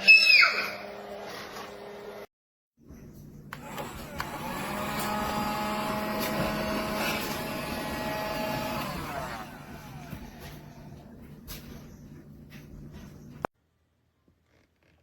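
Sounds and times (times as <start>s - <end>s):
toy vacuum motor whining: 3.6s - 10.9s.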